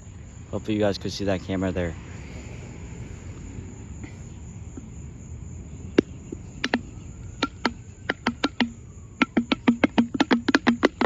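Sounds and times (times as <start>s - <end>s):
low background noise: 0.0s - 11.0s
sharp clicks: 6.0s - 11.0s.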